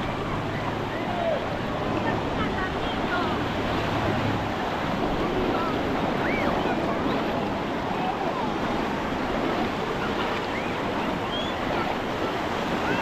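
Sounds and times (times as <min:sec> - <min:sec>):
sea waves breaking on beach: 0:00.0 - 0:13.0.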